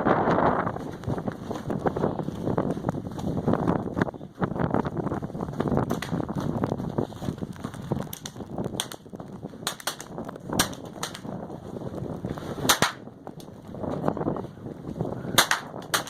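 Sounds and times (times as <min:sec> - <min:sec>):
wind buffeting microphone: 0:00.0 - 0:16.0
rifle shots: 0:12.7 - 0:13.0, 0:15.4 - 0:16.0.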